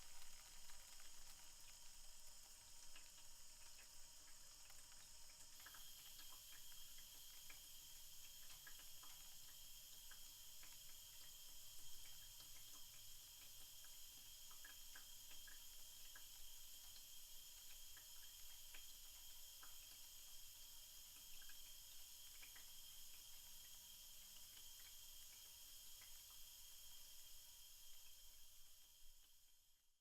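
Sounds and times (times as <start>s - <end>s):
small drips and ticks: 0.0s - 30.0s
toilet cistern refilling hiss: 0.0s - 30.0s.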